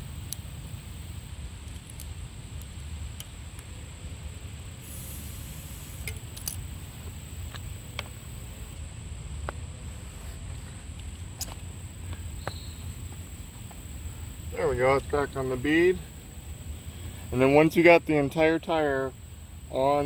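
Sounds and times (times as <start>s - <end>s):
steady low rumble: 0.0s - 20.0s
tire clicks and taps: 1.6s - 4.8s, 5.7s - 8.8s, 10.4s - 17.3s.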